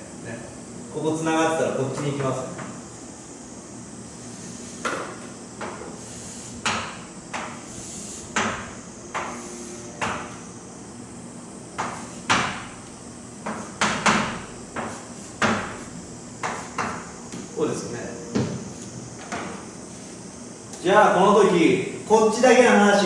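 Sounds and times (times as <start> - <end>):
writing strokes on a board: 14.8 - 17.0.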